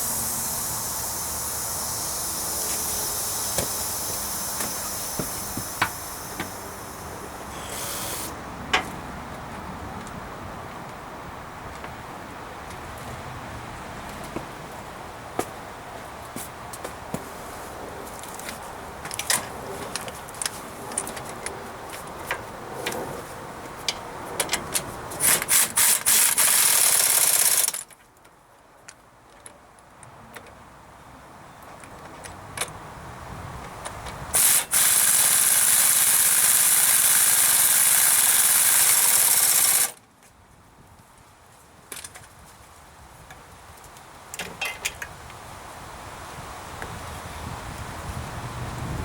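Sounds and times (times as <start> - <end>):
compressed air hissing: 0.0 - 8.4, 34.4 - 39.9.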